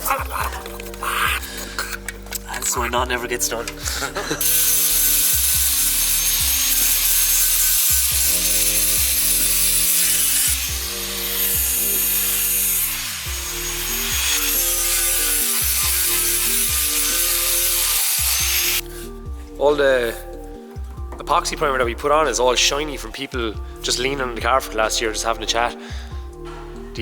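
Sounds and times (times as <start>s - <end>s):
background music with beat: 0.0s - 27.0s
sanding sheet metal: 4.4s - 18.8s.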